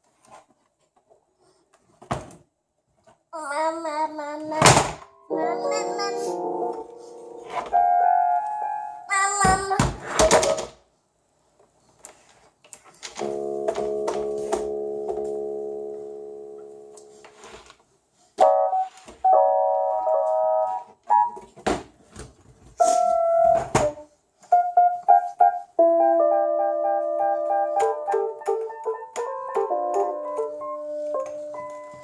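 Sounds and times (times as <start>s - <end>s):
electronic keyboard notes and chords: 5.3s - 9.1s, 13.2s - 17.2s, 18.4s - 21.4s, 24.6s - 32.0s.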